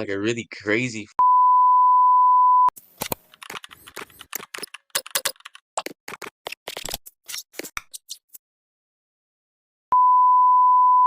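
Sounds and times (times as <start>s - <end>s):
rapid sharp clicks and taps: 3.2s - 7.0s.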